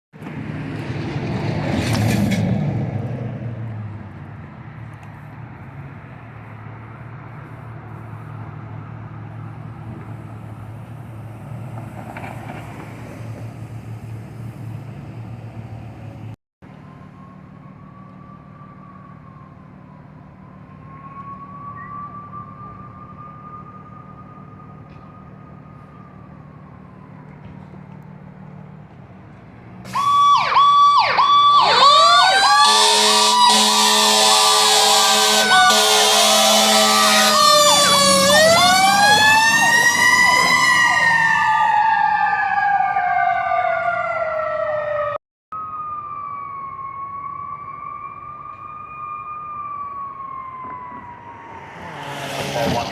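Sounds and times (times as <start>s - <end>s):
faint emergency siren wailing: 3.6s - 13.4s, 16.6s - 52.9s.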